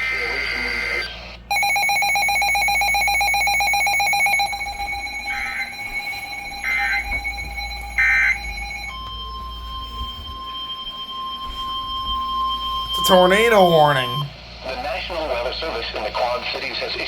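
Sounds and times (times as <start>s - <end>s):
pulsing electronic alarm tone: 1.5s - 14.3s
steady alert tone: 12.9s - 14.3s.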